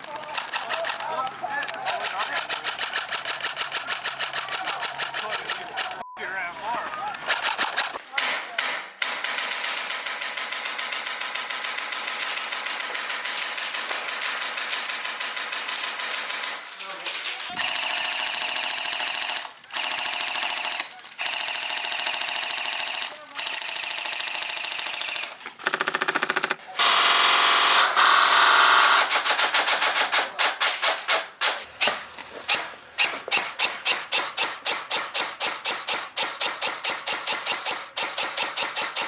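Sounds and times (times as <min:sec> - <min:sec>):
airsoft guns firing: 0:07.3 - 0:16.6, 0:17.5 - 0:26.6, 0:28.6 - 0:39.0.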